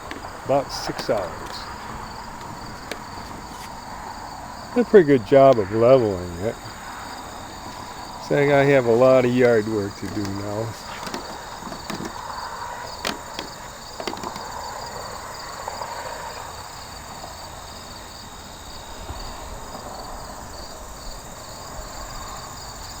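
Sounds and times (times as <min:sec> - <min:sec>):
sharp clicks or knocks: 0:00.0 - 0:03.8, 0:07.5 - 0:14.6
constant high drone: 0:00.0 - 0:15.1
insects chirping: 0:00.0 - 0:23.0.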